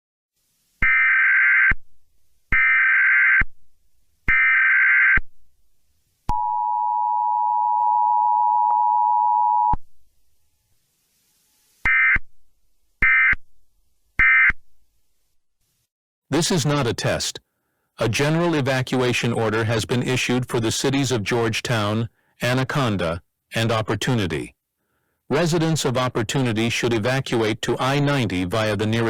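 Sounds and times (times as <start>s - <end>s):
two-tone attention signal: 6.3s - 9.8s.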